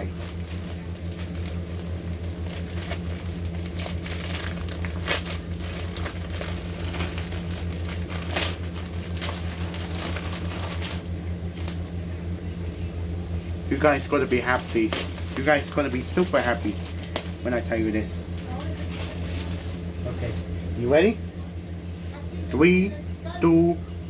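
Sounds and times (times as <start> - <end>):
package wrapping crinkling: 0.0 - 11.9, 14.0 - 17.4, 18.3 - 19.9
low hum: 0.0 - 24.0.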